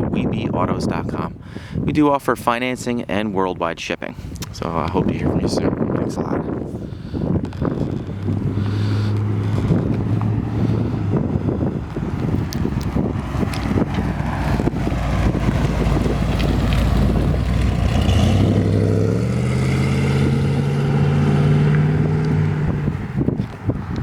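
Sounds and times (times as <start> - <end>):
wind buffeting microphone: 0.0 - 24.0
car engine running and accelerating: 6.5 - 24.0.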